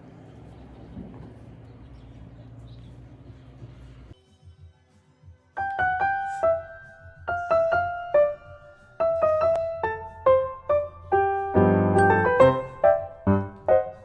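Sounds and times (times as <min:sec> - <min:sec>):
gentle piano melody: 0:05.6 - 0:14.0.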